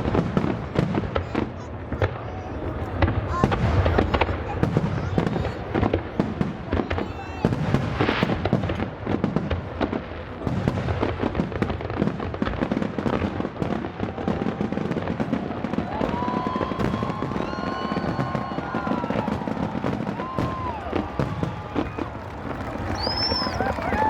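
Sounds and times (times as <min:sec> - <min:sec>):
fireworks bursting and crackling: 0:00.0 - 0:24.0
steady whistle-like tone: 0:22.9 - 0:23.6.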